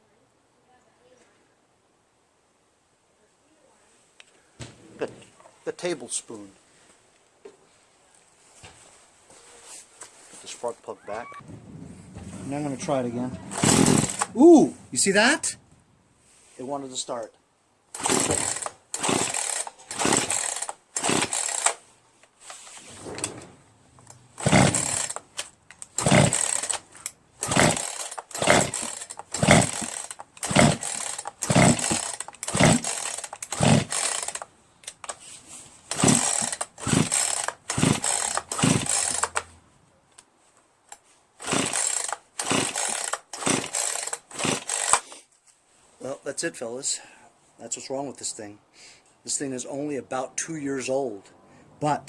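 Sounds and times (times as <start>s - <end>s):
chainsaw engine cranking: 12.2s - 15.6s, 17.9s - 21.9s, 22.5s - 35.2s, 35.9s - 39.5s, 41.4s - 45.2s
chainsaw starter rope ripping: 12.2s - 15.6s, 17.9s - 39.5s, 40.9s - 45.3s.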